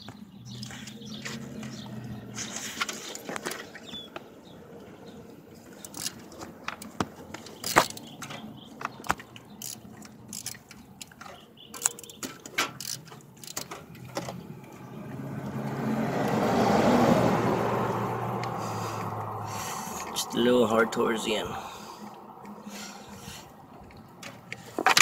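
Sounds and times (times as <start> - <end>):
ratchet clicking: 9.0 - 14.1
rushing noise: 15.6 - 23.7.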